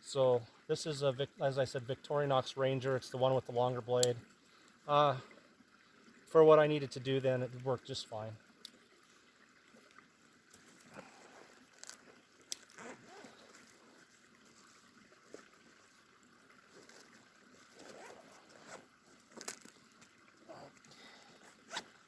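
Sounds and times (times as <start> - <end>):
gear rustling and crunching: 10.6 - 16.0, 16.6 - 22.0.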